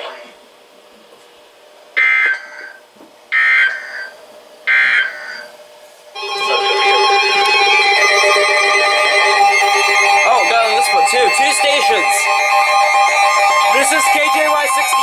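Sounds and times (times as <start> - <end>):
buzzy data tones: 6.2 - 15.0
music with held chords: 6.2 - 15.0.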